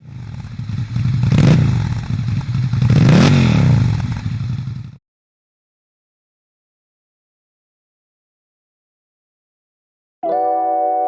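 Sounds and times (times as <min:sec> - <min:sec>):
motorcycle engine revving: 0:00.0 - 0:05.0.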